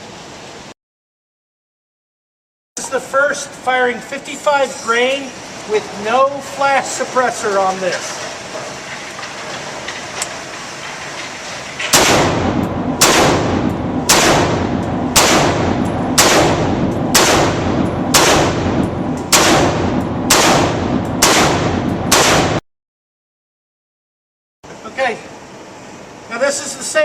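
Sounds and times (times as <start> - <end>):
rifle single shots with echo: 11.9 - 22.6.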